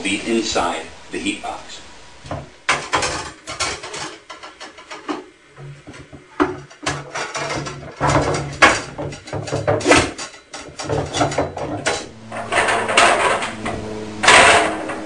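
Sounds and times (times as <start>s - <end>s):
low steady hum: 0.0s - 15.0s
metallic clatter against wood: 2.3s - 15.0s.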